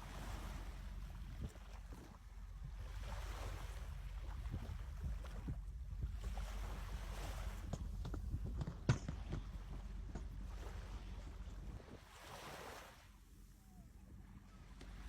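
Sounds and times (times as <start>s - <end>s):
sea waves: 0.0s - 15.0s
wind buffeting microphone: 2.5s - 12.0s.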